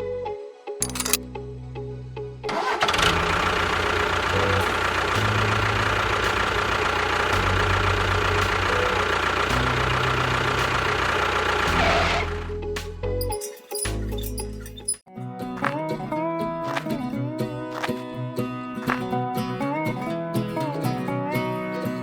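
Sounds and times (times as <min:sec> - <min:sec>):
engine chugging: 0:02.5 - 0:12.6.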